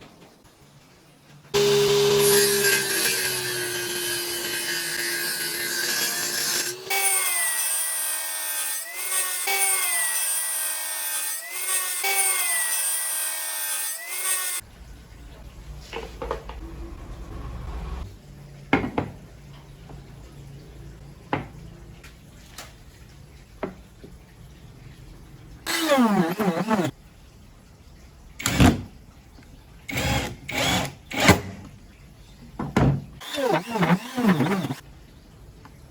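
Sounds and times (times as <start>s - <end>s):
low hum: 14.7s - 18.6s
hand saw cutting: 25.7s - 26.9s, 33.2s - 34.8s.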